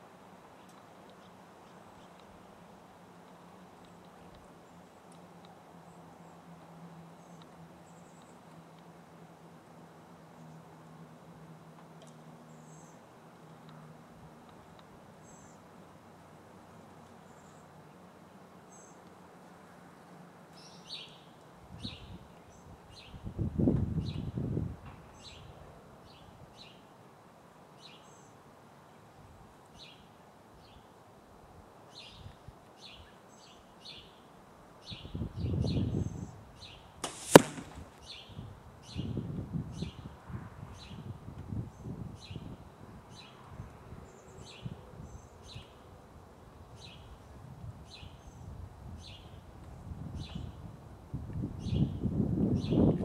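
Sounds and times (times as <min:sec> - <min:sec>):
wind rumble on microphone: 0:21.6 - 0:25.6, 0:34.9 - 0:36.7, 0:37.3 - 0:45.7, 0:46.5 - 0:53.0
arrow striking target: 0:37.0 - 0:38.0.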